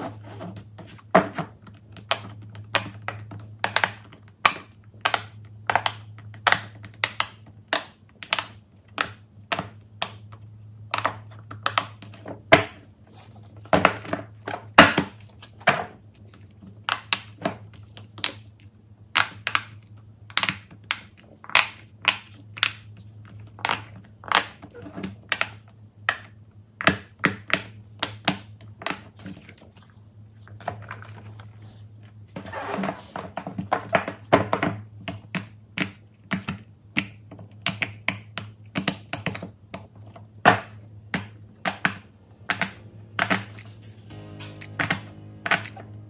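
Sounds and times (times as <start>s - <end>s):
low steady hum: 39.8s - 46.0s.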